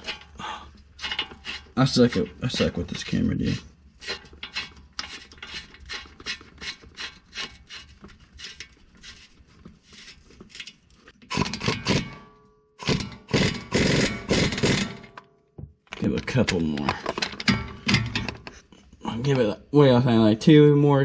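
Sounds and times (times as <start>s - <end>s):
impact wrench bursts: 11.3s - 12.2s, 12.8s - 15.1s.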